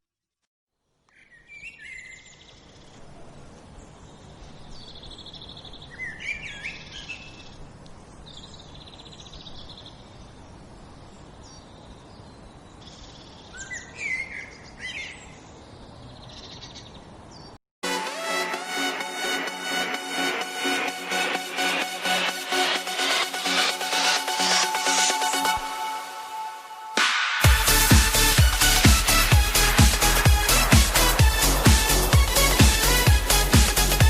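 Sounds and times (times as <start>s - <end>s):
thrush singing: 17.8s - 34.0s.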